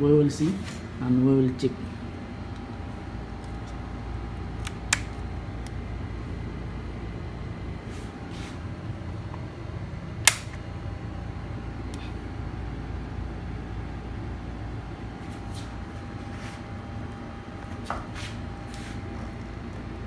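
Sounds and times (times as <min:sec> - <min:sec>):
steady background hum: 0:00.0 - 0:20.0
sharp clicks: 0:10.3 - 0:10.6.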